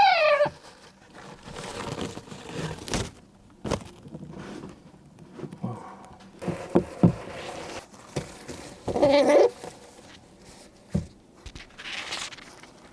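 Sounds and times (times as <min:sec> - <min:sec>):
parrot call: 0:00.0 - 0:00.6.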